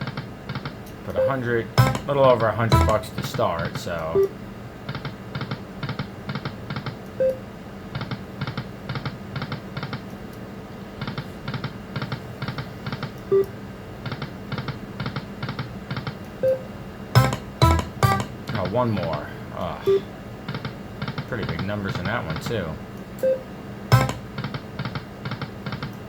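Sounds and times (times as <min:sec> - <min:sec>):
short beeps: 0:01.2 - 0:02.1
musical win sound: 0:01.8 - 0:02.1, 0:02.7 - 0:03.0, 0:17.2 - 0:18.3
slot machine reels spinning: 0:17.2 - 0:18.3, 0:23.9 - 0:24.3.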